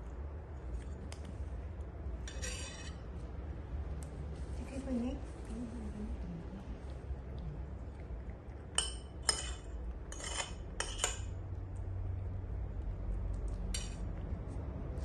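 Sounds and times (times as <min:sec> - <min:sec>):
tableware clinking: 0:08.8 - 0:11.3, 0:13.7 - 0:14.0.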